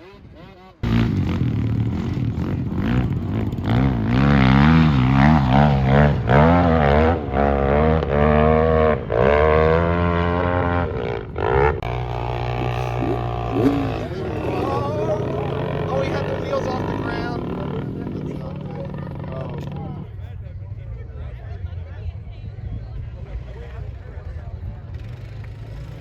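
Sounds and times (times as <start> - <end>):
quad engine revving: 0.0 - 19.9.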